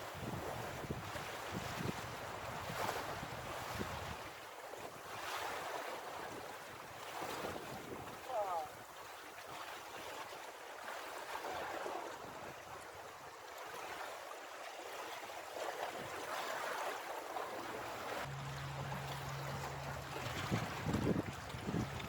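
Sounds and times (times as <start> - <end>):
sea water surging against rocks: 0.0 - 22.0
low steady hum: 18.3 - 22.0.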